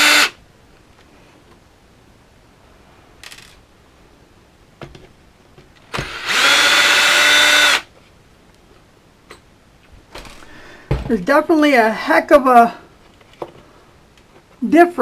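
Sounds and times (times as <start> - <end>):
cordless power driver running: 0.0 - 0.4, 5.9 - 7.9.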